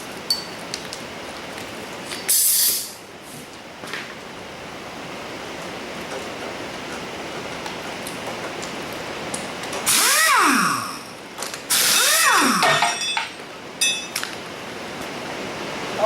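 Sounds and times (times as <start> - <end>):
impact wrench whirring: 9.8 - 11.1, 11.7 - 12.9
rain on a metal roof: 14.2 - 16.0.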